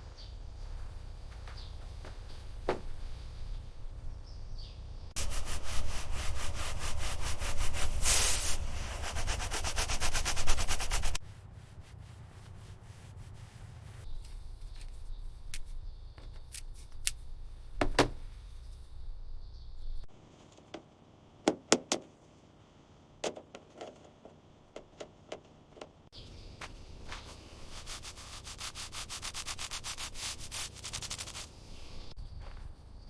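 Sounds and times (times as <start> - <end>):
pulsing sanding noise: 5.2 - 11.2, 27.2 - 32.1.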